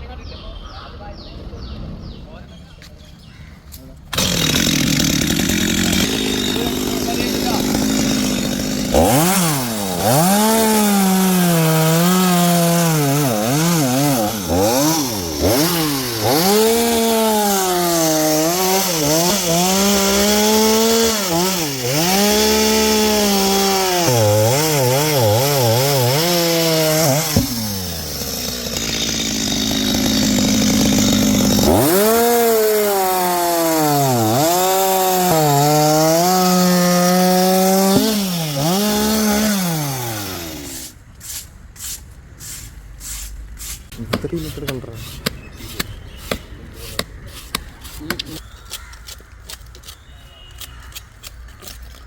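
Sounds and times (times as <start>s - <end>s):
chainsaw cutting wood: 4.1s - 41.0s.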